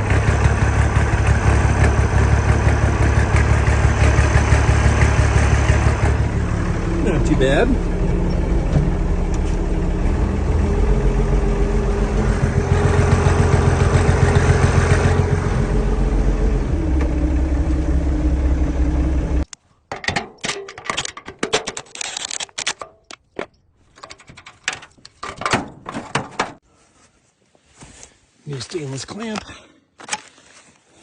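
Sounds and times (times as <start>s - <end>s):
tractor diesel engine revving: 0.0s - 19.5s.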